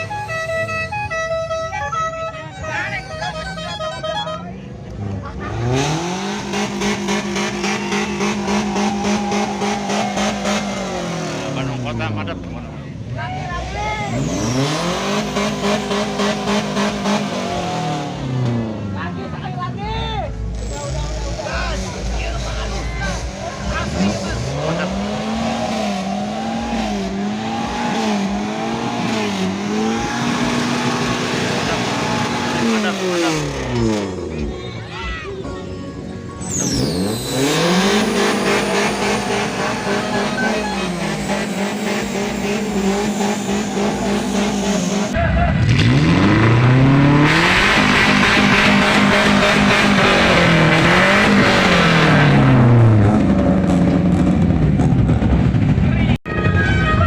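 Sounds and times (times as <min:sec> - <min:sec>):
musical car horn: 0:00.0 - 0:04.7, 0:35.8 - 0:43.1
vehicle engine noise: 0:00.0 - 0:57.0.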